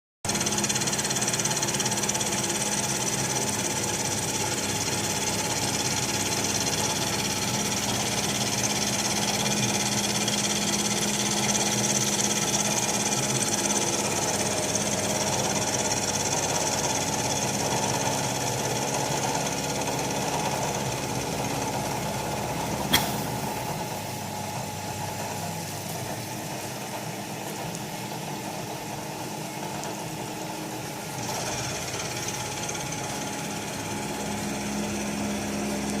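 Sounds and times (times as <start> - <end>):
milling machine whining hum: 0.3 - 36.0
sharp click: 22.9 - 23.3.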